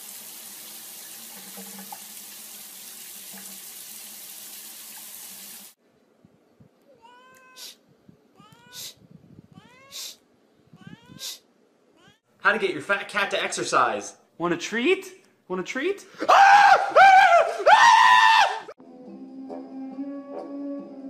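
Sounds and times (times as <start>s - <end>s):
water running from a tap: 0.0s - 5.8s
cat meowing: 6.9s - 7.8s, 8.4s - 10.1s, 10.8s - 12.2s.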